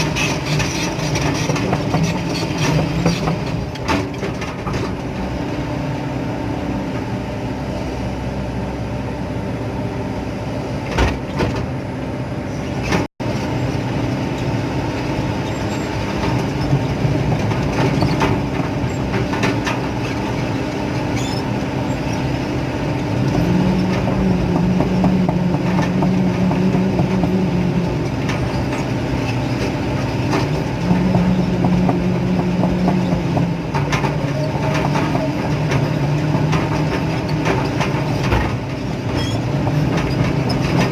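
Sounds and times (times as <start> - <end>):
excavator diesel engine running: 0.0 - 40.9.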